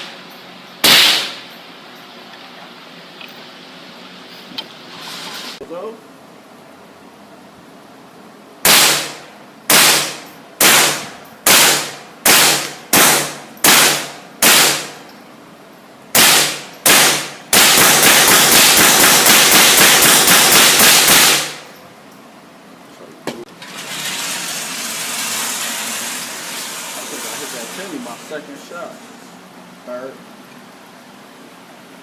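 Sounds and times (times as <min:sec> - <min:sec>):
rapid gunfire: 0:00.8 - 0:01.4, 0:08.7 - 0:14.9, 0:16.2 - 0:21.6
single gunshots: 0:00.8 - 0:01.4, 0:08.6 - 0:15.0, 0:16.2 - 0:21.6.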